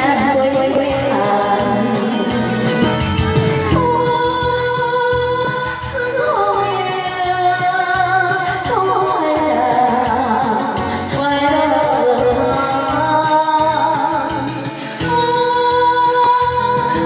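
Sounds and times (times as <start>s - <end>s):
musical accompaniment: 0.0s - 17.0s
person singing: 0.0s - 17.0s.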